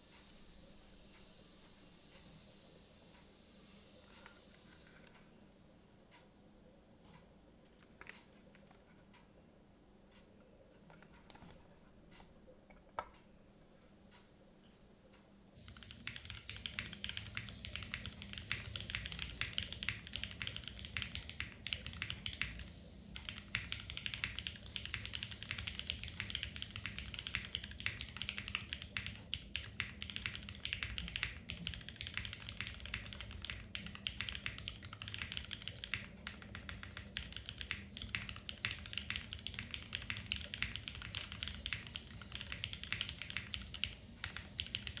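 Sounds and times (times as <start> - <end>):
fast mechanical keyboard typing: 15.6 - 45.0.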